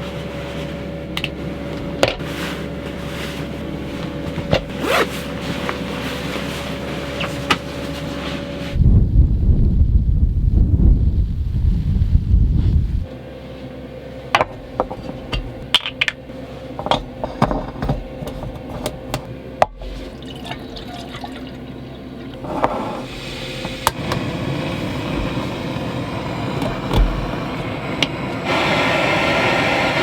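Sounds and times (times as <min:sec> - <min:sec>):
steady rushing noise: 0:08.6 - 0:13.1
sharp clicks and knocks: 0:16.8 - 0:19.8
liquid pouring: 0:19.8 - 0:21.6.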